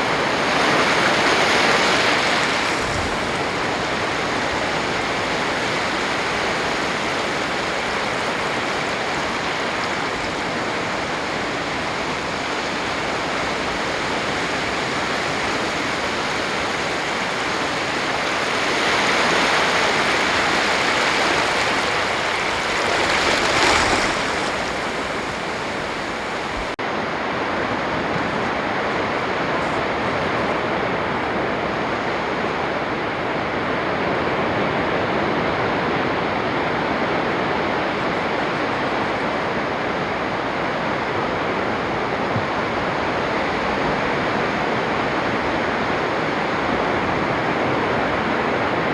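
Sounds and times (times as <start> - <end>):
waves breaking on a beach: 0.0 - 48.9.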